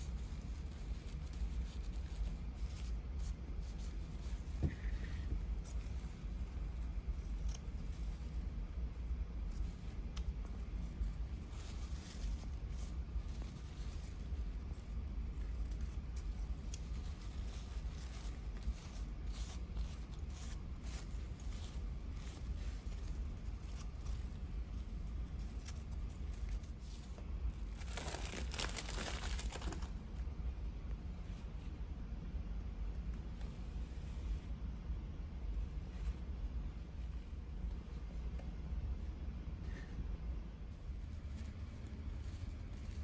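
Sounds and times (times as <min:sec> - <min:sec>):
paper rustling and crinkling: 0:00.0 - 0:08.5, 0:09.5 - 0:30.1
steady low hum: 0:00.0 - 0:43.0.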